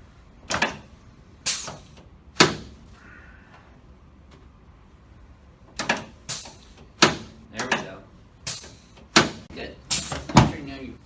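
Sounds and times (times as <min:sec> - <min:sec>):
sharp thuds on a back: 0:01.5 - 0:02.8.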